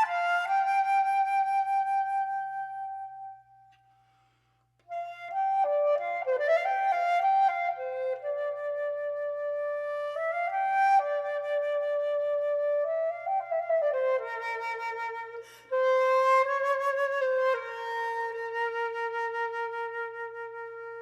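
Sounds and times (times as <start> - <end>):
solo flute melody: 0.0 - 3.8, 4.8 - 21.0.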